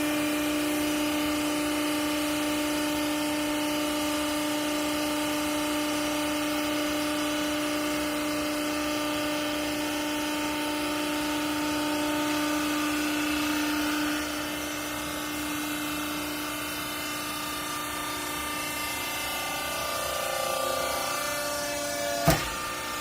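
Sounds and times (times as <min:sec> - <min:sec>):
machinery motor whine: 0:00.0 - 0:23.0
sharp knock: 0:22.2 - 0:22.6.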